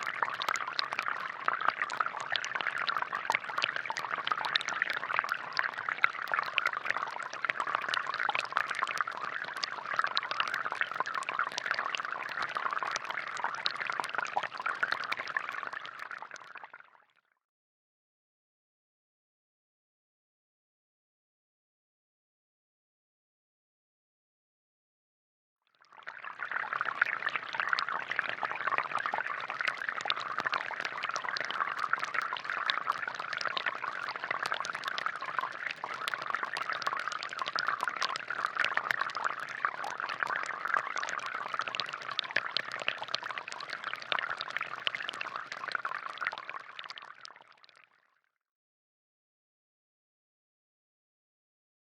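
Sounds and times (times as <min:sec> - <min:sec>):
water pouring with splashing: 0:25.9 - 0:48.0.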